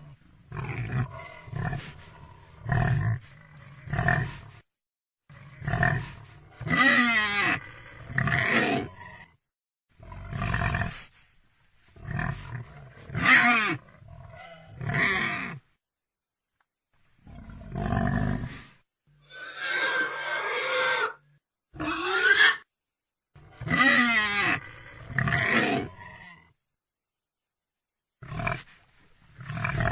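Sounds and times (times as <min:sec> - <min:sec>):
pig calling: 0:19.2 - 0:21.2, 0:21.8 - 0:22.7, 0:23.6 - 0:26.2.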